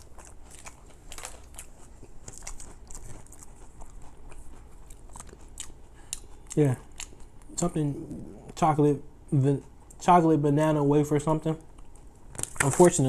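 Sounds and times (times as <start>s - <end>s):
person chewing wafer bar: 0.0s - 8.6s, 11.6s - 13.0s.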